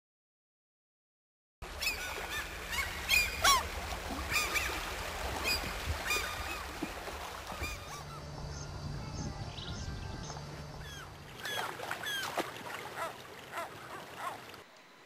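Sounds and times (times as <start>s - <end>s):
birds chirping and whistling: 1.8s - 3.6s, 5.4s - 6.7s, 7.5s - 12.4s.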